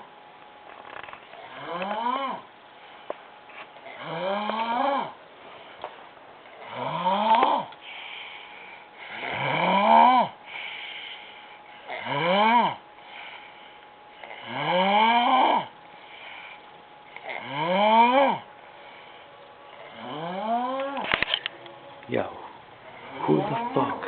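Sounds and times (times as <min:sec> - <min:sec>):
woman snoring loudly: 0:01.4 - 0:02.5, 0:03.9 - 0:05.2, 0:06.6 - 0:07.8, 0:09.0 - 0:10.4, 0:11.9 - 0:12.8, 0:14.2 - 0:15.8, 0:17.2 - 0:18.5, 0:19.8 - 0:21.0, 0:22.9 - 0:24.0
soft breaths: 0:05.1 - 0:06.8, 0:07.4 - 0:09.5, 0:10.3 - 0:12.1, 0:12.8 - 0:14.5, 0:15.7 - 0:17.4, 0:18.4 - 0:24.0.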